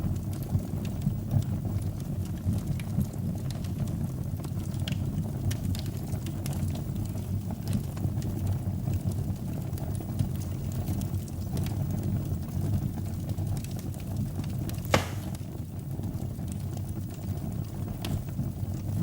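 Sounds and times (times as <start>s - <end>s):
wood fire rumbling and crackling: 0.0s - 19.0s
sharp fire pop: 14.9s - 15.4s.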